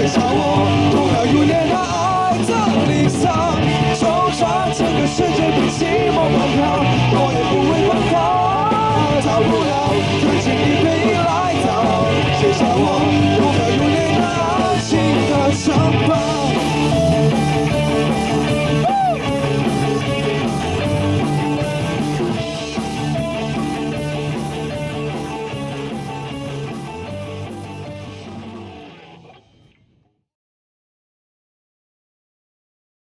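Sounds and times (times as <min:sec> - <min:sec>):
rock band playing: 0:00.0 - 0:29.6.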